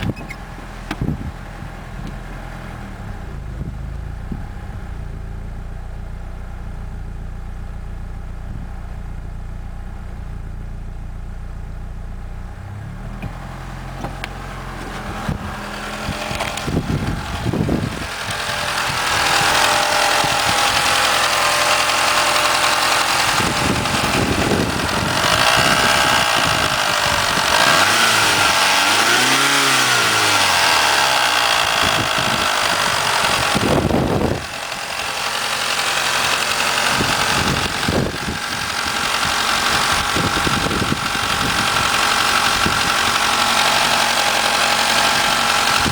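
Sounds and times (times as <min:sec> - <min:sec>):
car engine revving: 0:10.1 - 0:45.9.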